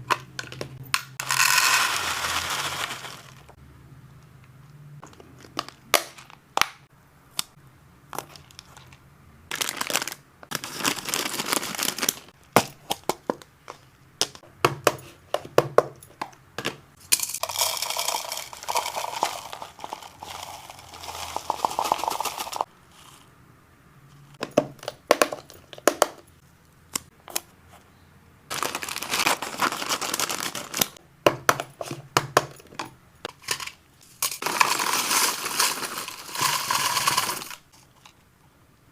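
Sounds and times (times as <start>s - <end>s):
dry snacks rattling: 1.2s - 3.5s, 9.5s - 12.3s, 17.1s - 23.1s, 28.5s - 31.0s, 33.4s - 37.7s
plastic packaging crinkling: 1.2s - 3.6s, 9.5s - 12.3s, 17.4s - 22.7s, 28.5s - 31.0s, 33.5s - 38.0s.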